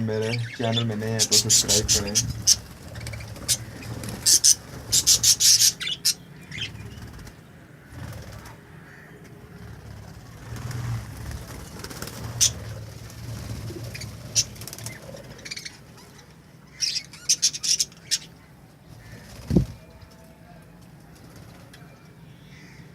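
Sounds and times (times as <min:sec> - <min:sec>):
budgerigars chirping: 0:00.1 - 0:07.1, 0:13.6 - 0:18.4.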